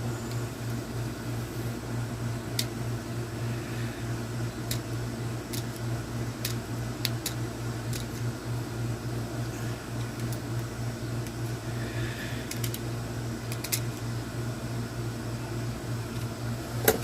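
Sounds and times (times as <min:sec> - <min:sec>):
air conditioner humming: 0:00.0 - 0:17.0
light clicks of electronic parts: 0:12.4 - 0:12.8.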